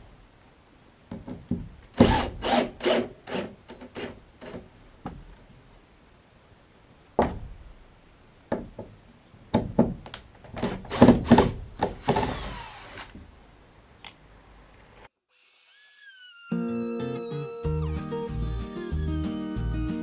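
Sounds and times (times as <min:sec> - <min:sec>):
knocks of wooden framework: 0:08.5 - 0:12.3
power tool whir winding down: 0:12.0 - 0:13.1, 0:15.3 - 0:20.0.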